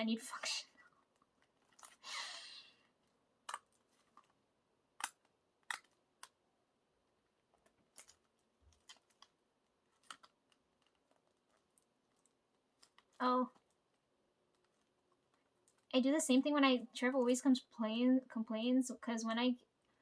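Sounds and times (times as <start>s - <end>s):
plastic shrink-wrap crackling: 1.0s - 2.1s, 7.8s - 15.9s.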